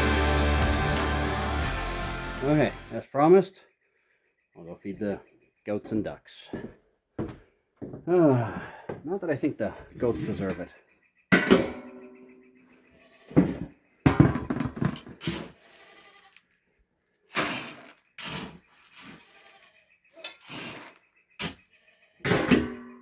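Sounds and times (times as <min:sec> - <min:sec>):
goats bleating: 0:13.0 - 0:13.5, 0:15.4 - 0:16.4, 0:19.1 - 0:19.8.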